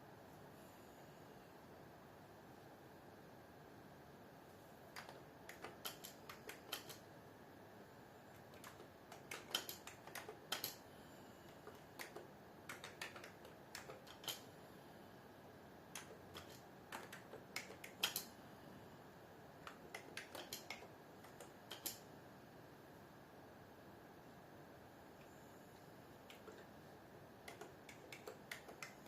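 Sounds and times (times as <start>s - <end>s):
faint steady hiss: 0.0s - 29.0s
keyboard typing clicks: 4.9s - 7.1s, 8.4s - 10.8s, 11.5s - 14.4s, 15.9s - 18.3s, 19.6s - 22.0s, 26.2s - 26.7s, 27.4s - 29.0s.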